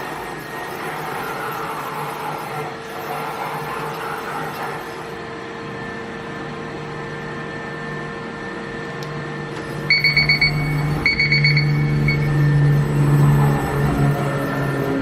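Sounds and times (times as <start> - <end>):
machine hum: 0.0 - 15.0
high electronic beeper: 9.8 - 15.0.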